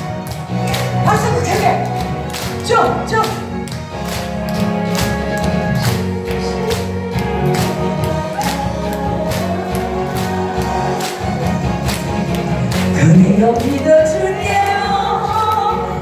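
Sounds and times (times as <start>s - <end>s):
instrumental backing track: 0.0s - 16.0s.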